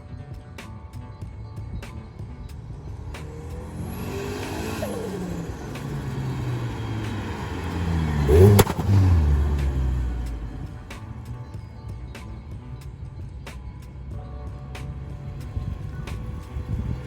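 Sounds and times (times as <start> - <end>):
engine revving: 1.6 - 17.0
turbo fluttering crack: 3.1 - 11.4.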